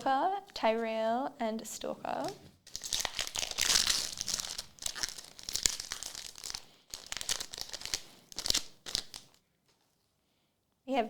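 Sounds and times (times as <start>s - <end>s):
wrapper tearing and crinkling: 2.7s - 9.4s.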